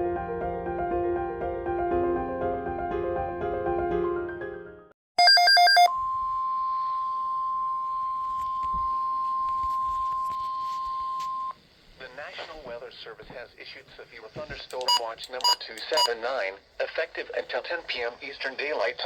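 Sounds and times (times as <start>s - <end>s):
steady high alarm tone: 5.2s - 11.5s.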